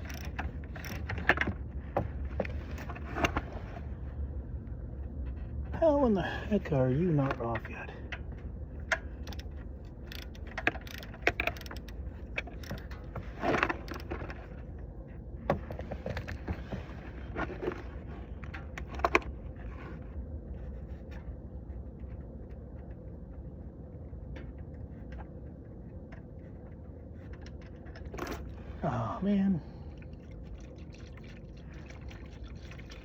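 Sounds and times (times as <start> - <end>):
wrench clicking and scraping: 0.0 - 1.2, 9.2 - 13.1
steady low hum: 0.0 - 33.0.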